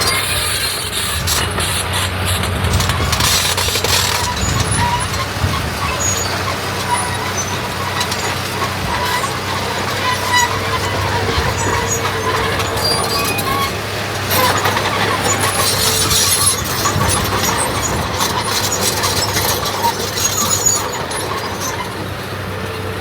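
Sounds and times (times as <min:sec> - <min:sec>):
high-pitched squeaks: 0:00.0 - 0:22.1
heavy machinery diesel engine: 0:00.0 - 0:23.0.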